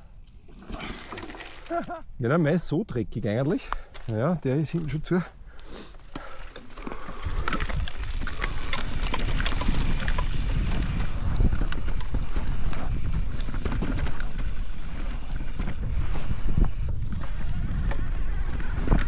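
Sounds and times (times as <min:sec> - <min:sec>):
tyres rumbling on trail: 0:03.9 - 0:19.0
bike rattling and knocking: 0:06.0 - 0:19.0
wind on microphone: 0:07.1 - 0:19.0.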